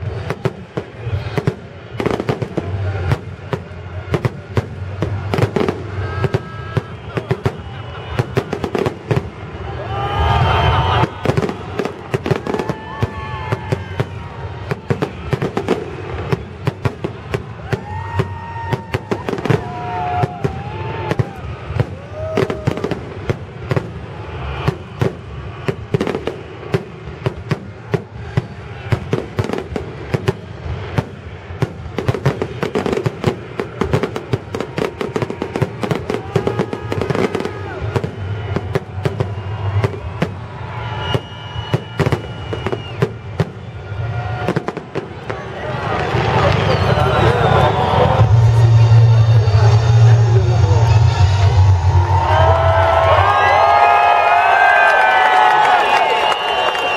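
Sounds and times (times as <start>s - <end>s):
fireworks bangs and crackles: 0.0s - 56.9s
music: 47.4s - 53.3s.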